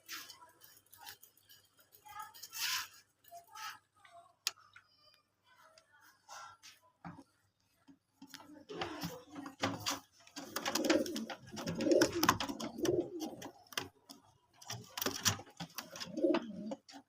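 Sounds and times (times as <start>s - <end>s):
sharp clicks and rustles: 7.0s - 17.0s
pigeons cooing: 8.7s - 17.0s.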